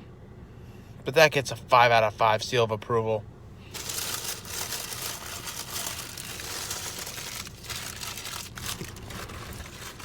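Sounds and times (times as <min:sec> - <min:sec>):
foil wrapper crinkling: 0:03.7 - 0:10.0.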